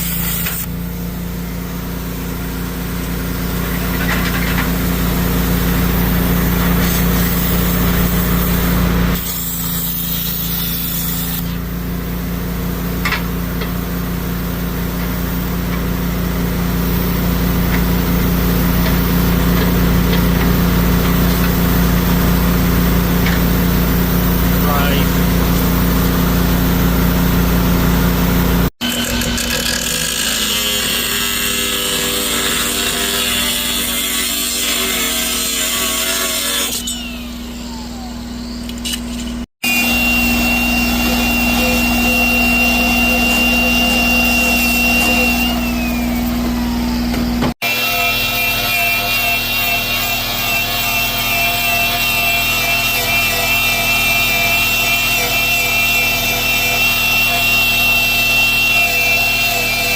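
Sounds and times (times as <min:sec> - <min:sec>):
diesel engine running: 0:11.6 - 0:28.7, 0:37.2 - 0:47.5.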